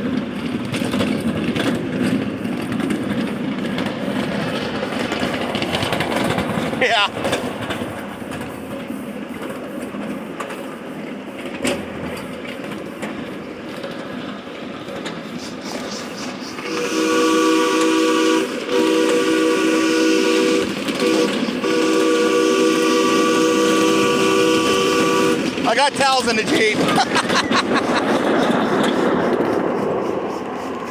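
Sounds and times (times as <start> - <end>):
train running noise: 0.0 - 30.9
steam locomotive chime whistle: 15.6 - 26.6.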